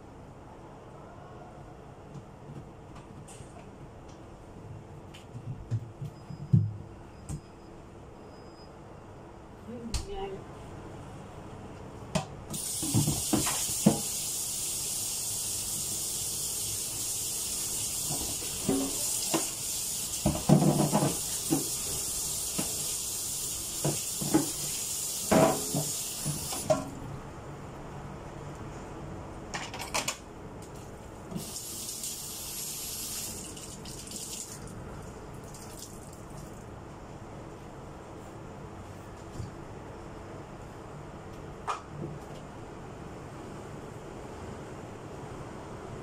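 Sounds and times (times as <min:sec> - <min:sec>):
tap water running into sink: 0:12.5 - 0:26.8, 0:31.3 - 0:34.6
items clattering in sink: 0:18.1 - 0:19.5, 0:20.2 - 0:21.8.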